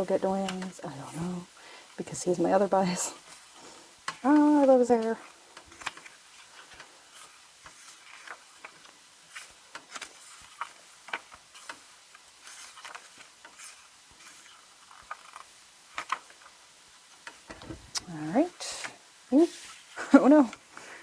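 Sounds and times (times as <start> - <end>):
pages rustling: 2.8 - 18.0, 19.4 - 20.8
paper and cardboard handling: 3.2 - 18.0.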